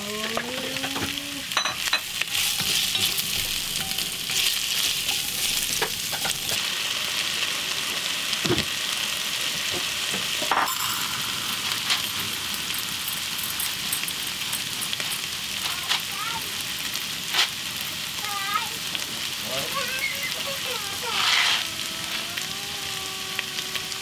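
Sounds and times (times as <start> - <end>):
vegetables sizzling in pot: 0.0 - 24.0
stirring knocks: 0.3 - 6.6.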